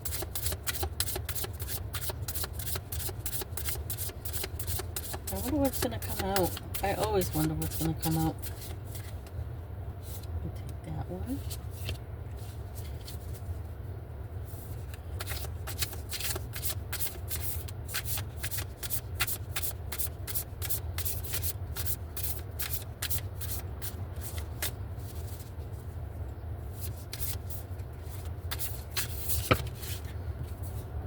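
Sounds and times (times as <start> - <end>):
cards being shuffled: 0.0 - 9.3, 11.4 - 13.5, 14.7 - 25.5, 26.8 - 30.8
steady low hum: 0.0 - 31.0.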